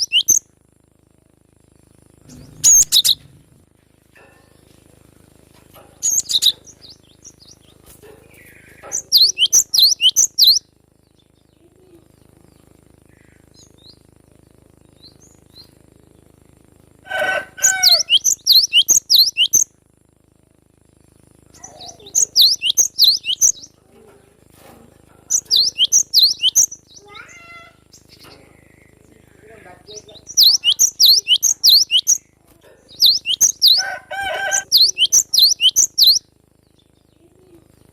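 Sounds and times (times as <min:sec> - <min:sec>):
bird singing high chirps: 0:00.0 - 0:00.4, 0:02.3 - 0:03.3, 0:06.0 - 0:07.7, 0:08.3 - 0:12.3, 0:17.6 - 0:19.7, 0:21.6 - 0:23.8, 0:25.3 - 0:29.1, 0:29.9 - 0:37.1.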